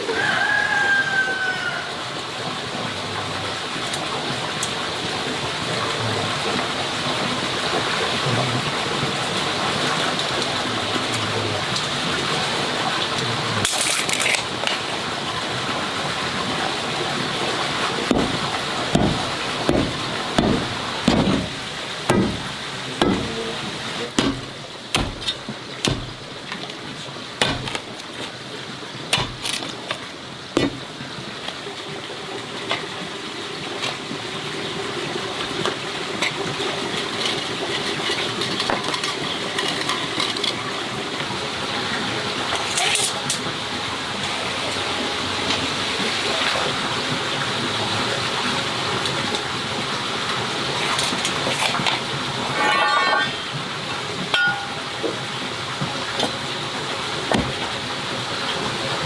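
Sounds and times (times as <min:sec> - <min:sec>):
sharp dull strikes: 0:18.1 - 0:23.4, 0:24.2 - 0:26.2.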